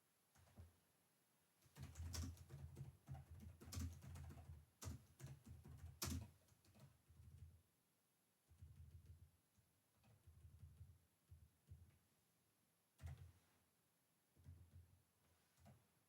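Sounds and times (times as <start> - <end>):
typing on a computer keyboard: 1.6 - 7.6, 8.4 - 11.8, 13.0 - 13.4.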